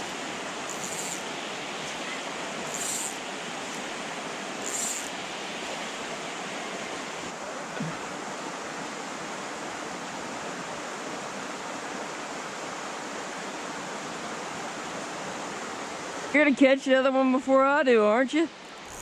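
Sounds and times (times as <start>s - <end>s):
short high hiss: 0.0s - 3.9s, 4.6s - 5.2s
creek water flowing: 0.0s - 16.4s.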